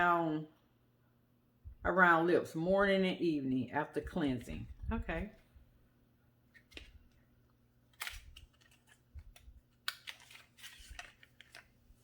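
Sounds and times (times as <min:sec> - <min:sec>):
cosmetic packaging clicks and rustles: 0:06.5 - 0:12.0.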